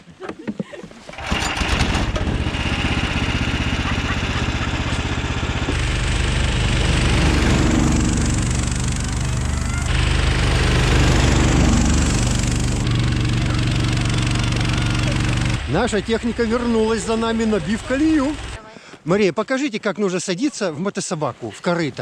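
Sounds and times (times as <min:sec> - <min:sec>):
small engine running: 0:01.1 - 0:18.6.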